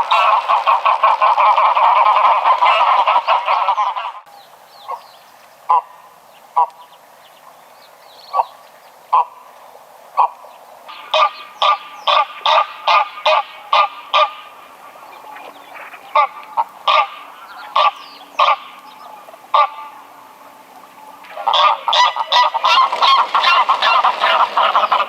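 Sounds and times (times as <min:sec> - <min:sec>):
goose honking: 0:00.0 - 0:04.3, 0:05.7 - 0:06.0, 0:09.1 - 0:09.4, 0:10.2 - 0:25.0.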